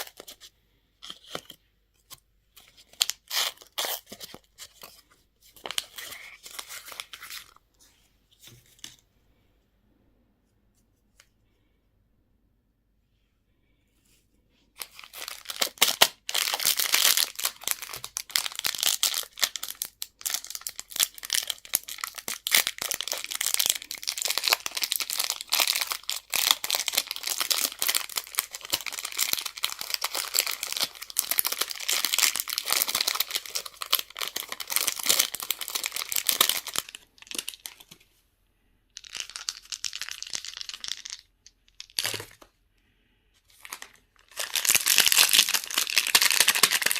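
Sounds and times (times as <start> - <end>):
candy wrapper crinkling: 0.0 - 1.6, 2.6 - 5.0, 5.6 - 7.6, 14.8 - 38.0, 39.0 - 42.5, 43.5 - 46.9.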